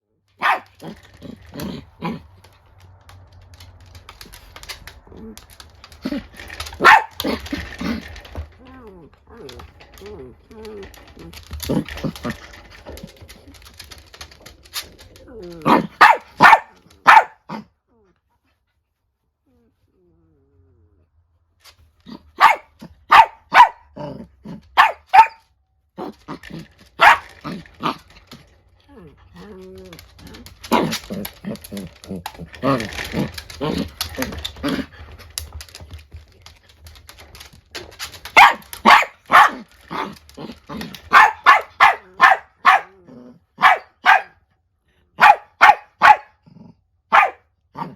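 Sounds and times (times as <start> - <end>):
small dogs barking: 0.4 - 2.2, 6.7 - 7.4, 15.6 - 17.7, 22.1 - 25.4, 27.0 - 28.0, 38.3 - 40.2, 41.0 - 44.4, 45.2 - 46.4, 47.1 - 47.9
dog growling: 0.4 - 3.0, 3.9 - 16.9, 22.0 - 25.0, 26.0 - 44.2, 46.1 - 47.9.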